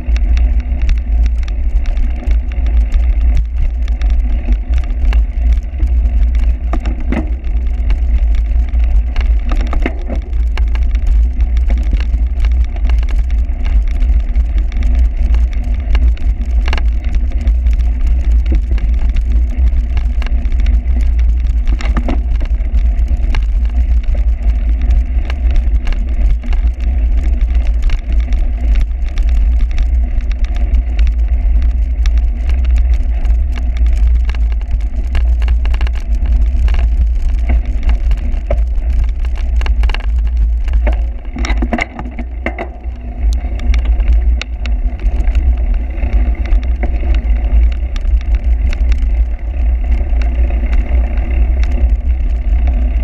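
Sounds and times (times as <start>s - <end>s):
clicks and knocks: 35.1s - 43.0s.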